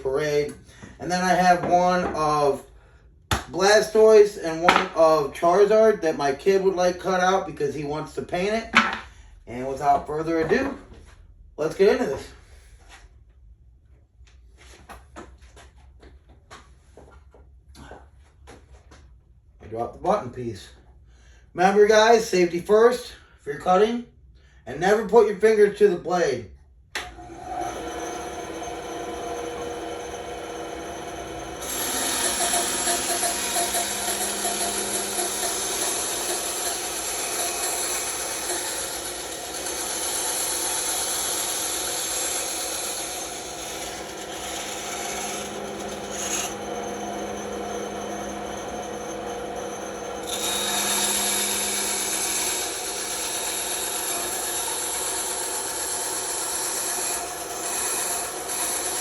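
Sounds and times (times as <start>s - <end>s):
bandsaw cutting wood: 3.5s - 5.8s, 27.0s - 59.0s.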